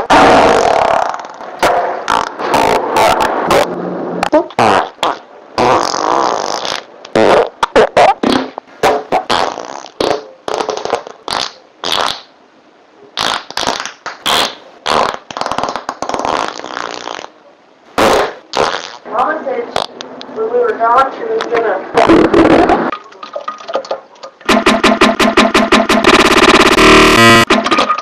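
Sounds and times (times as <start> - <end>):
farts: 0.0 - 12.3, 13.2 - 17.3, 18.0 - 19.0, 22.0 - 22.9.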